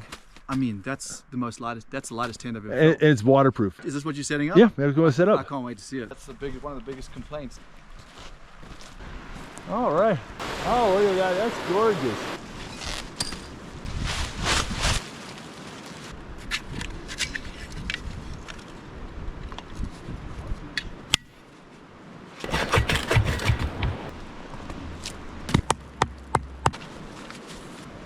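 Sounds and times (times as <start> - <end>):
tent fabric rustling: 12.4 - 13.2, 13.8 - 16.2, 26.8 - 28.0
sharp clicks: 22.4 - 24.1
sharp knocks: 22.5 - 24.1, 25.5 - 26.9.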